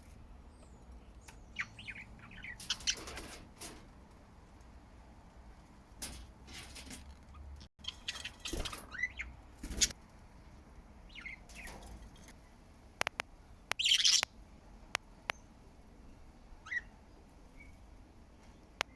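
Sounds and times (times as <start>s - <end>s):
budgerigars chirping and chattering: 0.7s - 3.4s, 6.6s - 10.0s, 11.1s - 11.8s, 13.7s - 14.3s, 16.6s - 16.9s.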